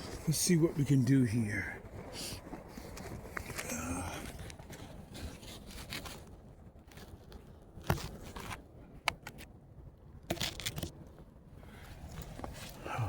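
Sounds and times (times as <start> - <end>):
camera handling scraping and rustling: 2.4 - 9.5, 10.3 - 11.0.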